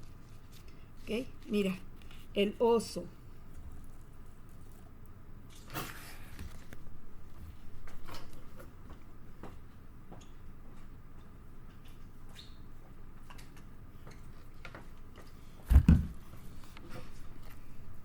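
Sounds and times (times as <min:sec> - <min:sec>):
loud thump: 0:15.7 - 0:16.2.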